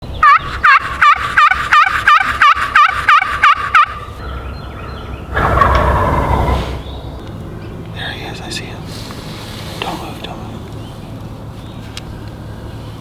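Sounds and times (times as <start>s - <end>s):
wild turkey yelping: 0.0s - 11.3s
burst of rushing noise: 4.2s - 7.3s.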